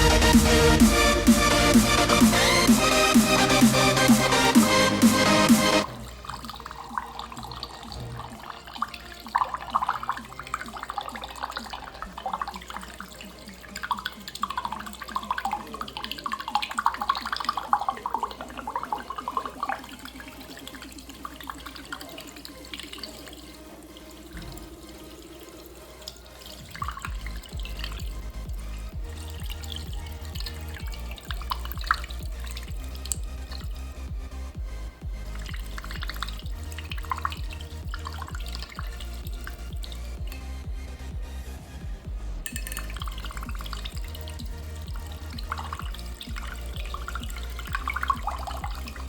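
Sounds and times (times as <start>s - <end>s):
low hum: 0.0s - 6.5s, 26.4s - 49.0s
liquid pouring into container: 2.0s - 41.3s, 42.4s - 49.0s.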